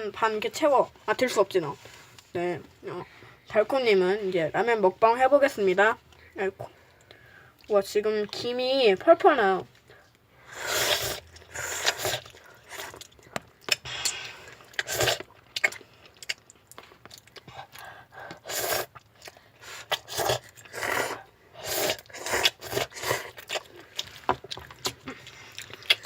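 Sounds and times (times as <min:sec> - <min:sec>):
slurping noodles: 0:10.5 - 0:13.1, 0:13.7 - 0:15.3, 0:18.4 - 0:19.0, 0:19.6 - 0:23.7
chewing: 0:10.9 - 0:21.2, 0:21.8 - 0:26.0.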